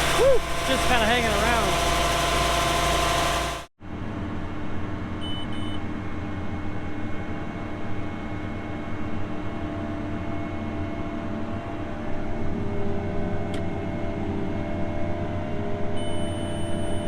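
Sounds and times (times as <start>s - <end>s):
machinery engine running: 0.0s - 3.7s.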